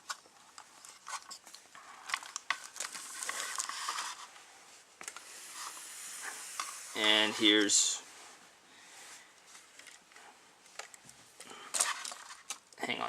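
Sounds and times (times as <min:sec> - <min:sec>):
rustling and crinkling: 0:00.0 - 0:13.0.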